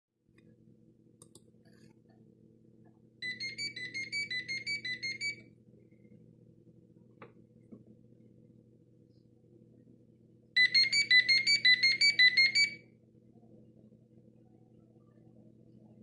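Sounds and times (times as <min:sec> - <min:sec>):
cordless phone ringing: 0:03.2 - 0:05.4, 0:10.6 - 0:12.8.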